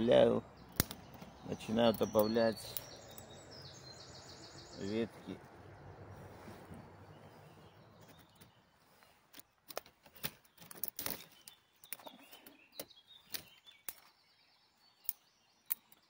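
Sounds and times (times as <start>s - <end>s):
dry twigs snapping: 0.7s - 3.2s.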